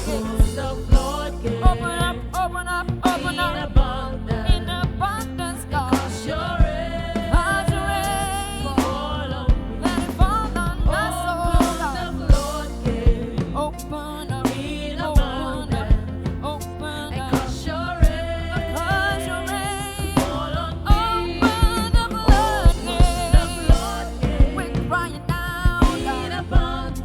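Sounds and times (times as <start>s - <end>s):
drum hits: 0.0s - 2.4s, 20.0s - 27.0s
gospel band playing: 0.0s - 27.0s.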